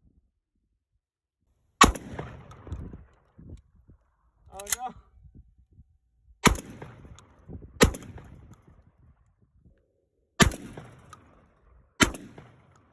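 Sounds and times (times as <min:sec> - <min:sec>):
shotgun shots with echo: 0:01.8 - 0:02.7, 0:06.4 - 0:08.4, 0:10.4 - 0:12.7.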